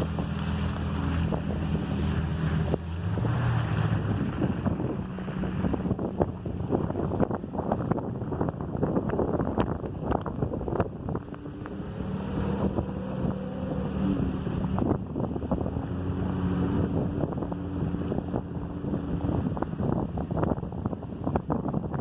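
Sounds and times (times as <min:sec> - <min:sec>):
wind noise on microphone: 0:00.0 - 0:22.0.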